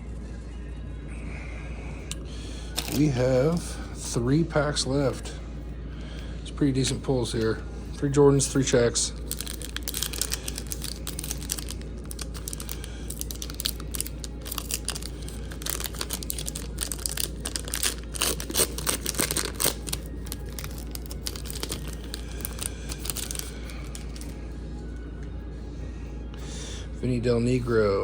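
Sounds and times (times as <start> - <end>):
steady low hum: 0.0 - 28.0
foil wrapper crinkling and tearing: 2.8 - 3.2, 9.2 - 24.4.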